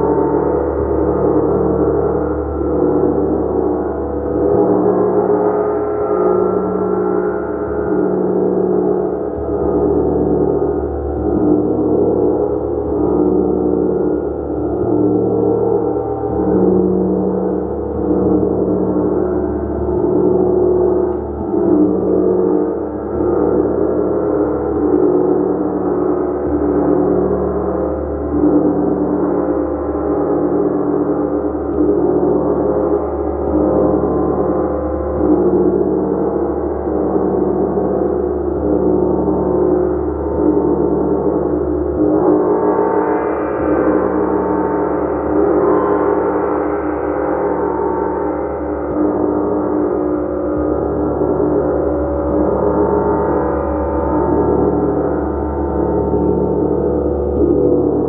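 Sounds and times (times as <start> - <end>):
gong ringing: 42.3 - 58.0.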